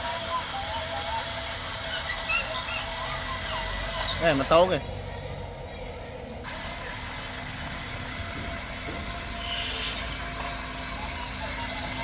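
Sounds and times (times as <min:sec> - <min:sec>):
toy excavator motors whirring: 0:00.0 - 0:12.0
short high rasp: 0:09.2 - 0:12.0.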